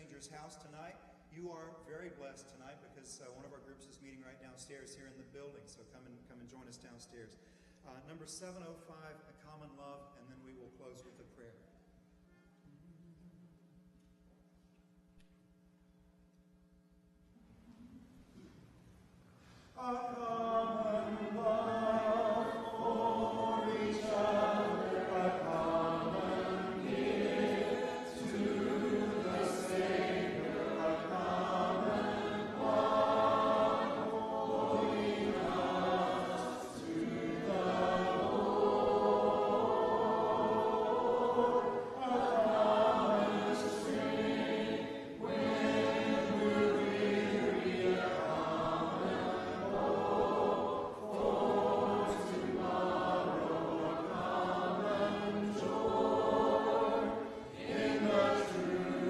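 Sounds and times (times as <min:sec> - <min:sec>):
congregation singing a hymn: 0:19.8 - 0:59.0.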